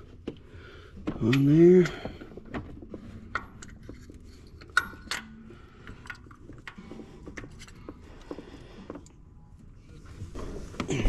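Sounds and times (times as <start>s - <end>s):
metal socket clinking on engine parts: 1.0s - 8.0s.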